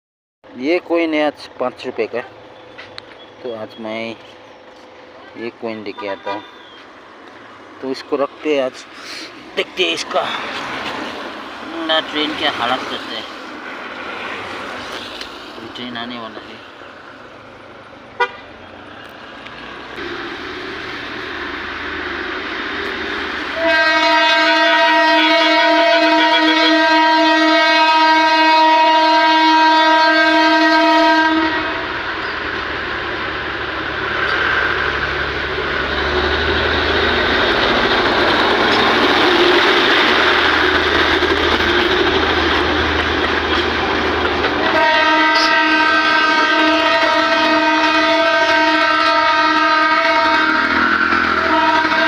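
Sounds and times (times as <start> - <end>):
train rumbling: 0.5 - 52.0
train horn blast: 18.2 - 18.5, 23.5 - 31.9, 44.6 - 52.0.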